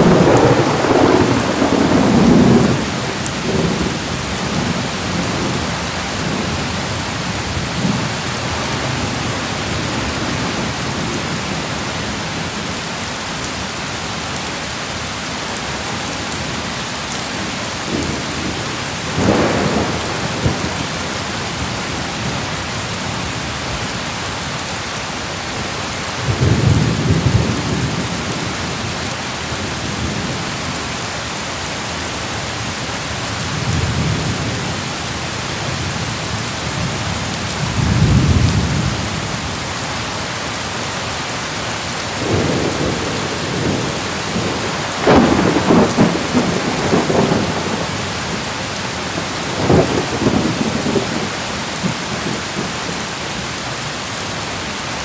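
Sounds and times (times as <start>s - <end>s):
thunder rumbling: 0.0s - 11.7s, 17.4s - 22.5s, 42.2s - 52.9s
heavy rain hissing: 0.0s - 55.0s.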